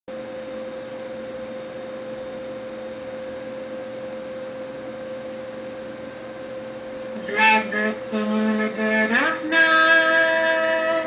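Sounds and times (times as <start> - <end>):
steady electronic tone: 4.0 - 11.0.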